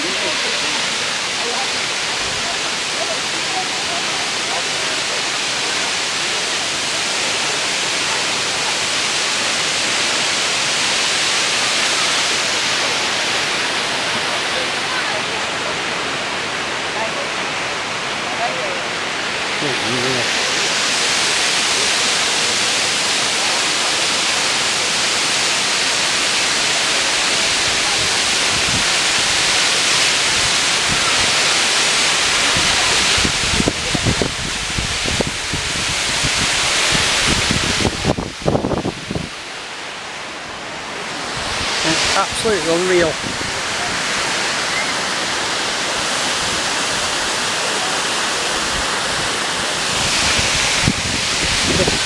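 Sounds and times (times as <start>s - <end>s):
waterfall roaring: 0.0s - 52.0s.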